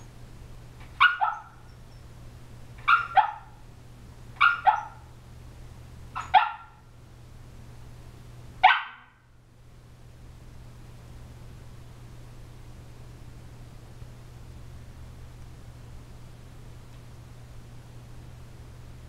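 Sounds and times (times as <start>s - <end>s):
puppy barking muffled in sleep: 0.9s - 1.8s, 2.8s - 3.6s, 4.4s - 5.1s, 6.1s - 6.8s, 8.6s - 9.2s.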